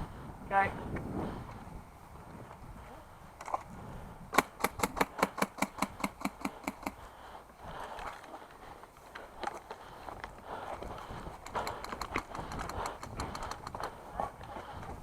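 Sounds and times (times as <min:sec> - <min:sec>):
airsoft rifle rapid firing: 0:04.4 - 0:07.0.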